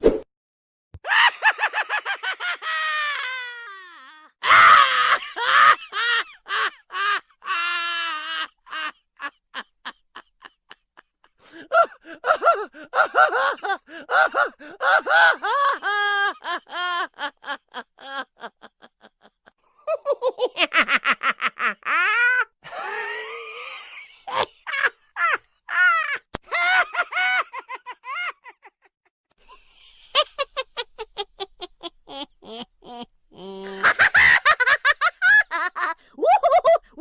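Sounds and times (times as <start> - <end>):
comic cackling laughter: 1.0 - 37.0.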